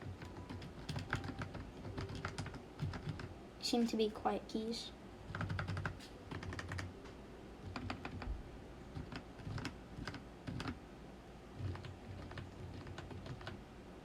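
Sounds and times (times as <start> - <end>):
soft muted keyboard clicks: 0.0 - 3.3, 5.3 - 6.9, 7.7 - 8.3, 8.9 - 10.8, 11.6 - 13.6.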